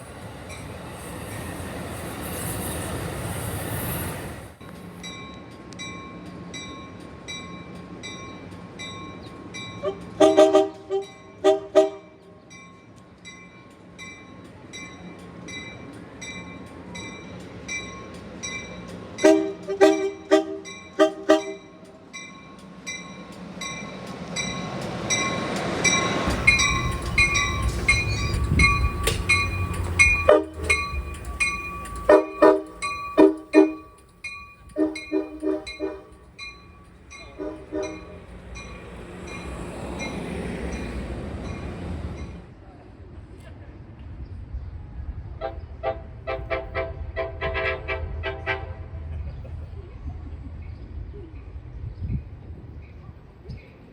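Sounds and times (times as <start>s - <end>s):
train rumbling past: 0.0s - 53.9s
train horn blasts: 9.8s - 12.3s, 19.2s - 21.9s, 30.2s - 30.8s, 32.1s - 33.9s, 34.7s - 36.2s, 37.2s - 38.2s, 45.4s - 49.0s
ringing crossing bell: 20.6s - 42.4s.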